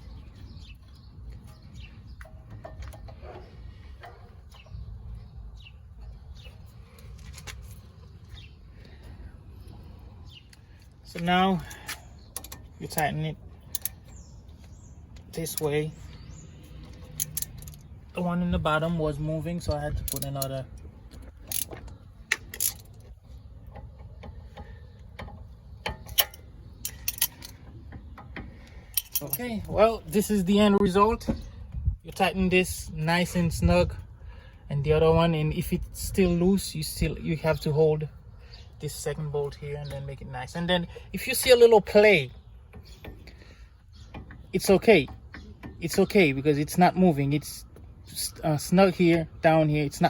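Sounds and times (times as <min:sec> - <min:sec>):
steady low rumble: 0:00.0 - 0:38.6
birds chirping: 0:00.0 - 0:50.0
metal clinks: 0:28.8 - 0:29.7.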